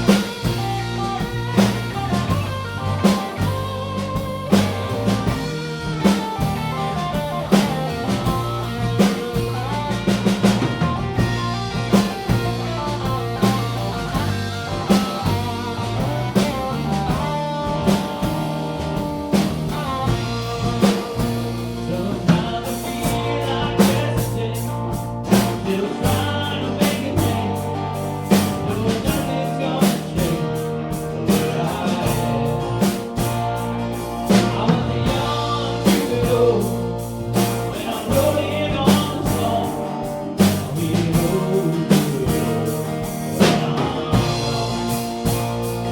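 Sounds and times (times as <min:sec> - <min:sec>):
bass: 0:00.0 - 0:45.9
drum kit beat: 0:00.0 - 0:45.9
guitar: 0:00.0 - 0:45.9.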